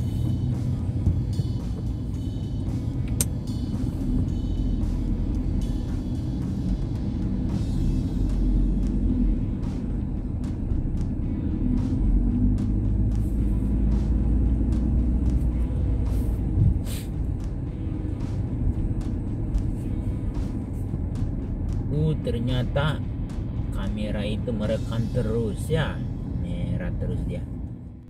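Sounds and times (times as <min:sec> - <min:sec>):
road and engine rumble: 0:00.0 - 0:28.0
brief hiss: 0:16.2 - 0:17.1.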